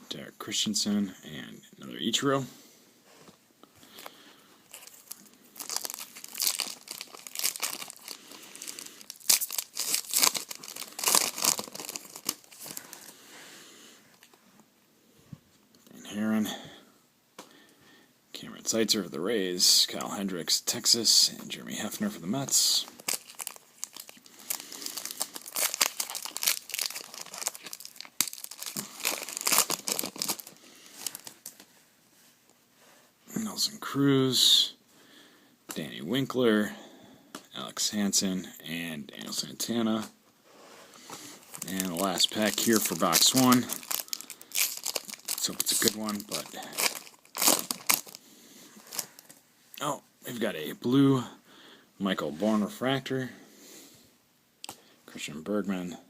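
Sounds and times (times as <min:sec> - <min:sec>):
foil wrapper tearing and crinkling: 0:04.7 - 0:13.1, 0:23.0 - 0:31.5, 0:41.5 - 0:48.2.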